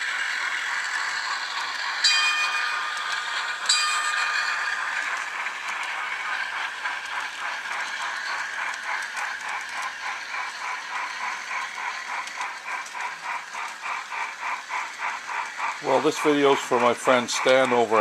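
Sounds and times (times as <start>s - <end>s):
model steam locomotive chuffs: 0.0s - 18.0s.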